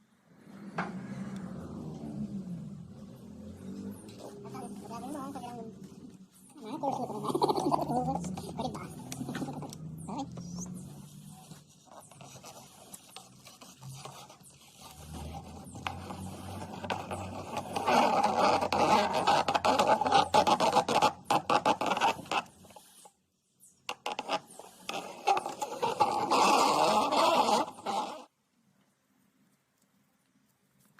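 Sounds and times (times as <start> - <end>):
rough scraping and scratching: 2.9 - 23.2, 23.9 - 28.3.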